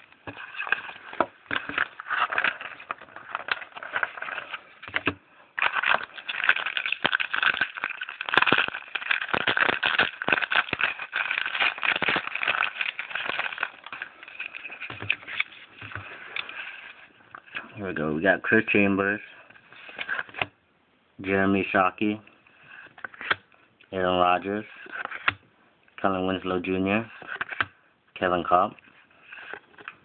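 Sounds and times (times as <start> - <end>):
foil wrapper crinkling and tearing: 0.1 - 5.0, 5.6 - 17.6.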